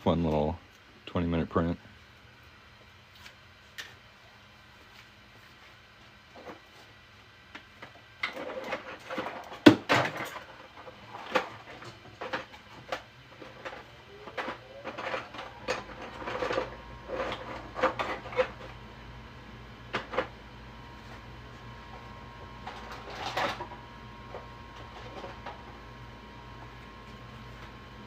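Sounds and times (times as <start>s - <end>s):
three d printer motors whining: 10.1s - 28.0s.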